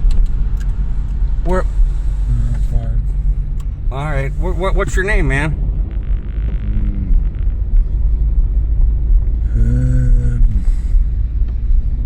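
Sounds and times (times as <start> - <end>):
car rumble inside cabin: 0.0 - 12.0
brief low even-pitched sound: 5.5 - 8.1.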